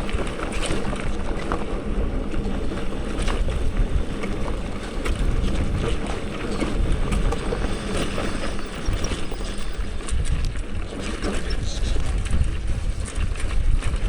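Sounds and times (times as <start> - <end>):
bicycle rolling on dirt road: 0.0 - 14.0
wind buffeting microphone: 0.0 - 14.0.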